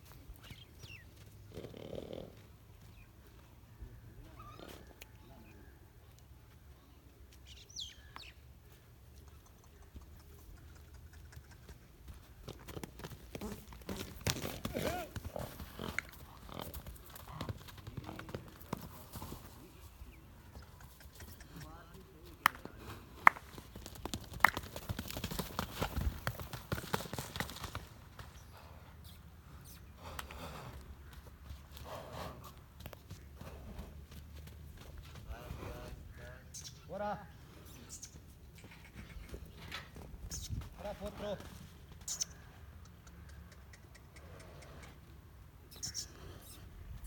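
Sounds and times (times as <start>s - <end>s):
bird chirp: 0.4s - 1.2s, 7.4s - 8.5s, 36.5s - 36.9s, 45.6s - 46.7s
horse hooves clip-clopping: 9.1s - 28.5s, 30.7s - 35.8s, 37.9s - 44.2s.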